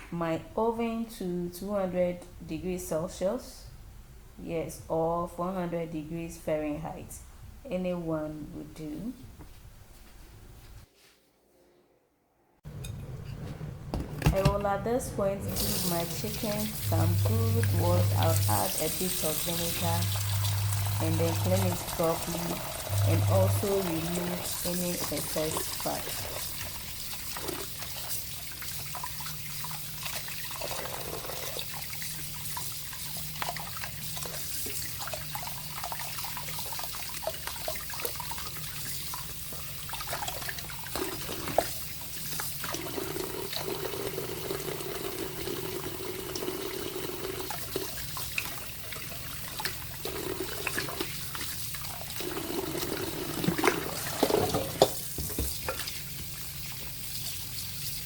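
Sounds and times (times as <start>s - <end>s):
tap water splashing into sink: 49.4s - 57.0s.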